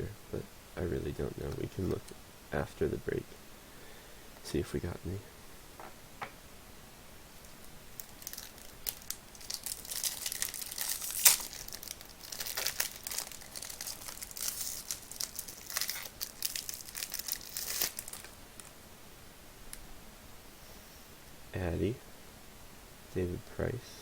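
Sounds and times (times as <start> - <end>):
sharp wrapper crack: 7.4 - 18.8
card pack wrapper tearing and crumpling: 7.6 - 18.7.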